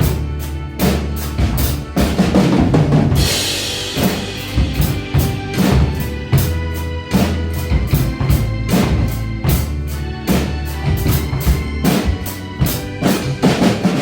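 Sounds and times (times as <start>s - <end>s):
backing music track: 0.0s - 14.0s
drum kit beat: 0.0s - 14.0s
cymbal crash: 3.2s - 5.5s.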